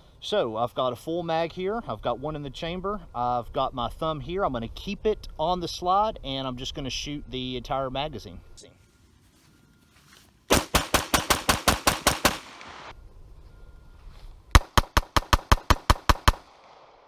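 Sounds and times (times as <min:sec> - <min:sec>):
pistol fired rapidly: 0:10.5 - 0:12.9, 0:14.6 - 0:16.4.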